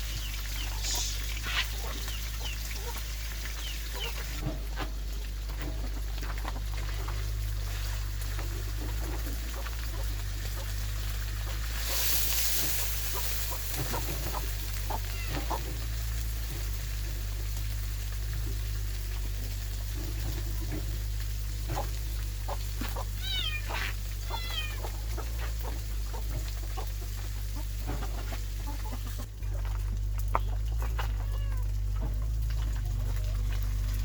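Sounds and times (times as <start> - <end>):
kittens meowing: 14.9 - 15.7, 23.0 - 25.3, 30.4 - 32.1.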